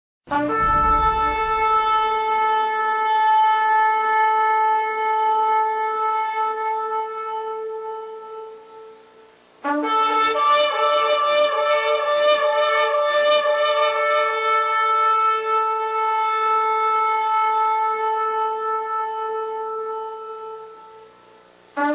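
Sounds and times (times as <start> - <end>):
shofar long blasts: 0.3 - 21.9.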